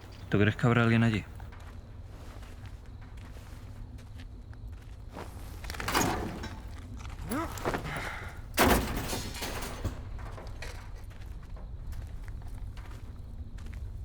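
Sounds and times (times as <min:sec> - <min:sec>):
loud crashing impacts: 0:07.5 - 0:11.1.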